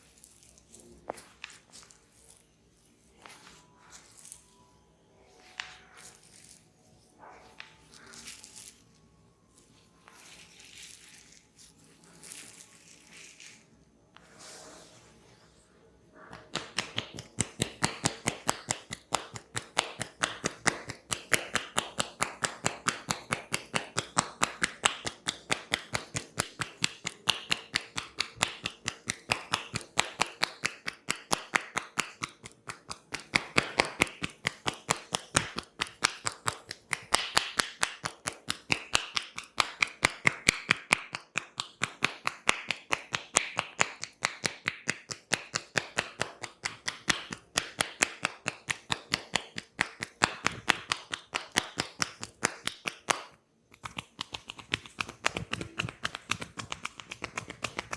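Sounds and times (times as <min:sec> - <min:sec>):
hands slapping on body: 0:16.3 - 0:57.9.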